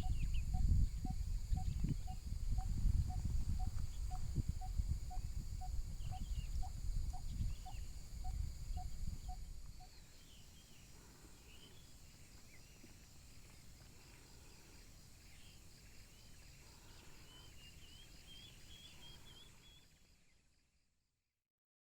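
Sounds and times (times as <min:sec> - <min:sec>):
birds chirping: 0:00.0 - 0:11.9.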